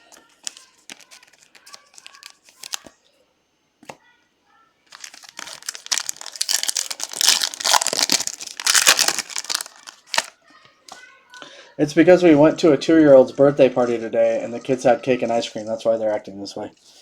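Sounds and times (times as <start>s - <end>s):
foil wrapper tearing and crinkling: 0.4s - 2.9s, 4.9s - 10.4s.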